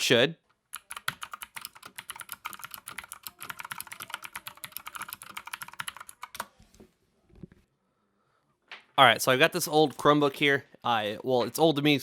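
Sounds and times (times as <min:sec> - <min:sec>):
fast typing on mechanical keyboard: 0:00.8 - 0:06.5.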